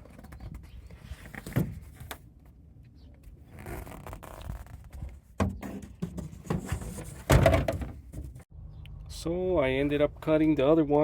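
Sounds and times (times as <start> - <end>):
rubbing and rustling: 3.5 - 8.5.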